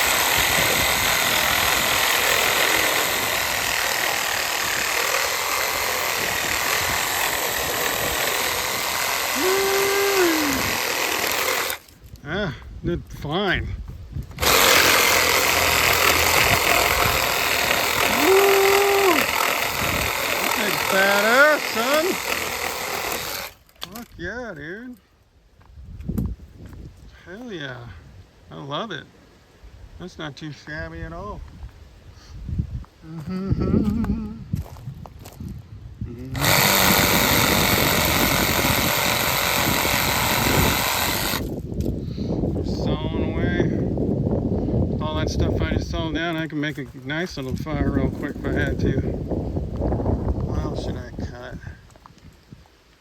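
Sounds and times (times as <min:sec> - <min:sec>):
reciprocating saw cutting branches: 0:00.0 - 0:12.1, 0:14.3 - 0:24.0, 0:36.3 - 0:41.6.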